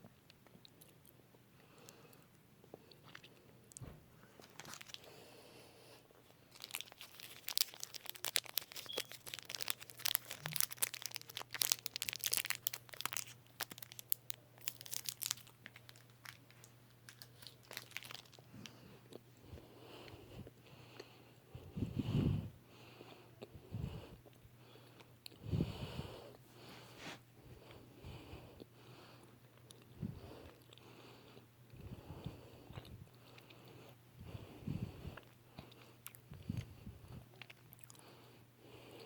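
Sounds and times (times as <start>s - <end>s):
plastic wrapper crinkling: 4.3s - 5.1s, 6.5s - 18.8s.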